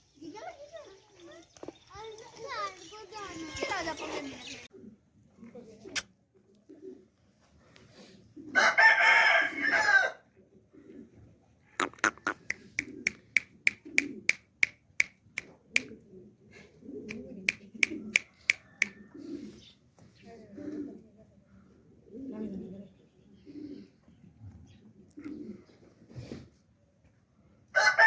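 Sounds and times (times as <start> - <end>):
rooster crowing: 8.6 - 10.2, 27.8 - 28.0.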